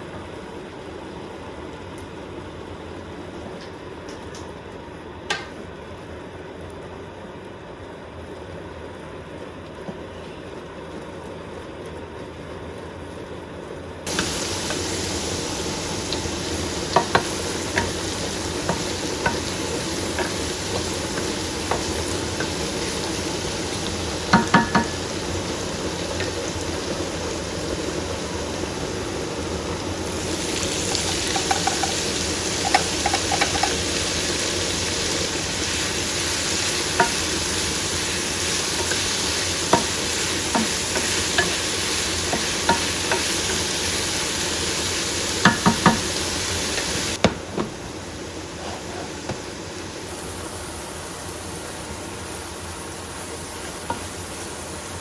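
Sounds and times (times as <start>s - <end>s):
food sizzling in a frying pan: 14.0s - 55.0s
utensil knocking against pan: 16.9s - 18.0s, 24.3s - 25.0s, 31.1s - 32.0s, 32.6s - 33.8s, 45.4s - 46.1s, 47.2s - 47.8s.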